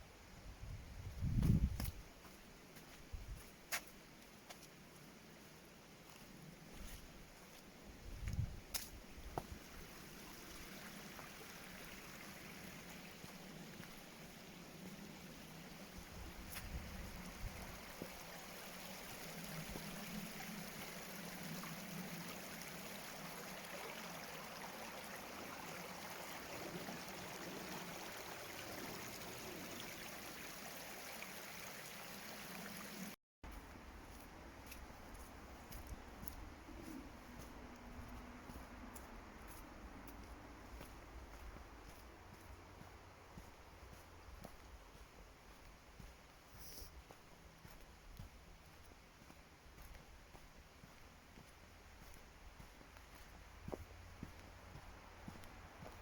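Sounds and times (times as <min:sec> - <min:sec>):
stream running: 0:01.2 - 0:56.0.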